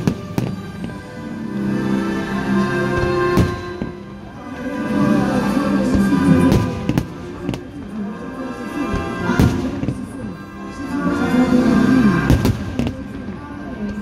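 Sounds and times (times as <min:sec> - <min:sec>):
loud music: 0:00.0 - 0:13.0.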